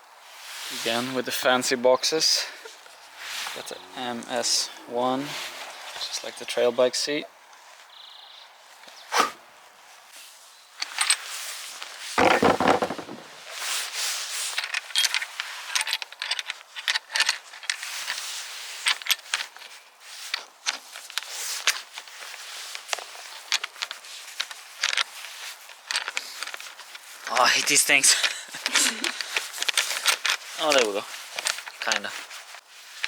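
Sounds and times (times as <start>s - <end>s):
handling clicks scrapes and rustles: 10.8s - 33.0s
loud knock: 12.2s - 13.3s.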